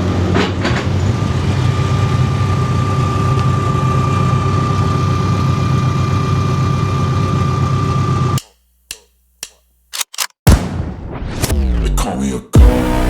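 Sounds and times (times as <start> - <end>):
vehicle engine running: 0.0 - 8.4.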